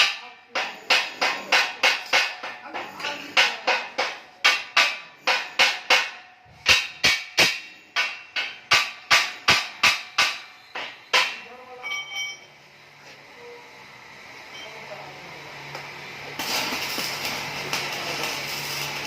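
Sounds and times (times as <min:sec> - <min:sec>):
hammer striking steel: 0:00.0 - 0:12.4.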